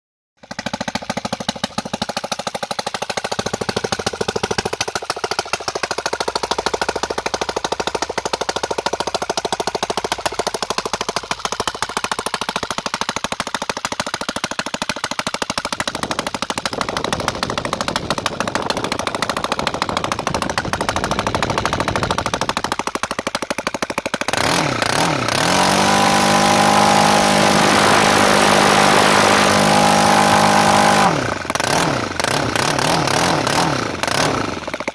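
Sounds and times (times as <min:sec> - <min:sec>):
loud model engine running: 0:00.4 - 0:34.9.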